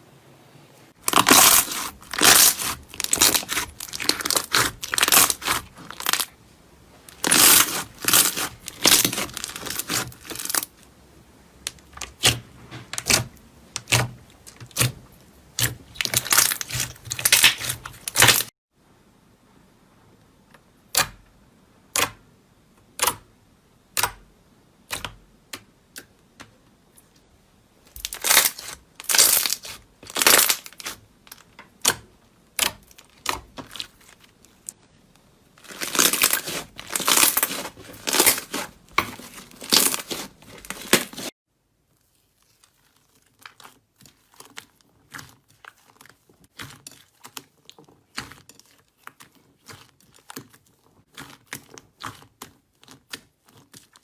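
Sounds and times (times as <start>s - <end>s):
slime crackling and popping: 1.0s - 6.4s, 7.1s - 10.7s, 13.0s - 18.5s, 28.0s - 34.7s, 35.6s - 41.3s.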